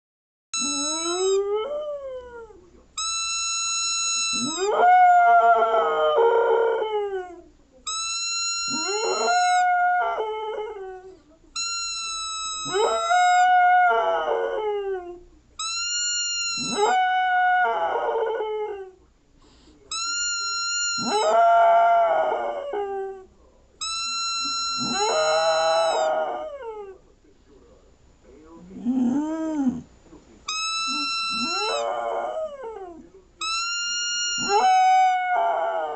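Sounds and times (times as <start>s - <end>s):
whistle blown: 0.6s - 1.4s, 3.0s - 4.7s, 7.9s - 9.6s, 11.6s - 13.4s, 15.6s - 16.9s, 19.9s - 21.4s, 23.8s - 26.0s, 30.5s - 31.8s, 33.4s - 35.0s
dog howling: 0.6s - 2.6s, 4.3s - 7.4s, 8.5s - 11.1s, 12.5s - 15.2s, 16.5s - 19.0s, 20.4s - 23.3s, 24.2s - 27.0s, 28.8s - 29.9s, 30.6s - 35.9s.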